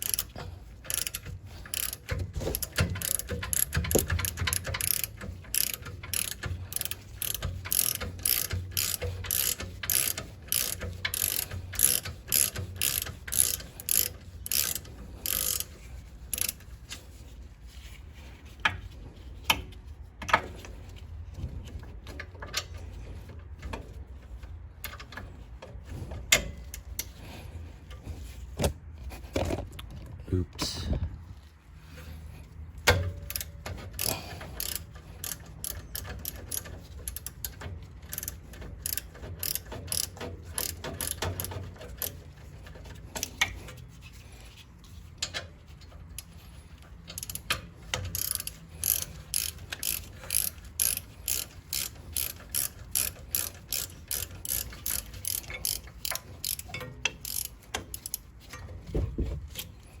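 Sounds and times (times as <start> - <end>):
ratchet wrench clicking: 0.0 - 17.0, 32.8 - 43.6, 46.2 - 58.6.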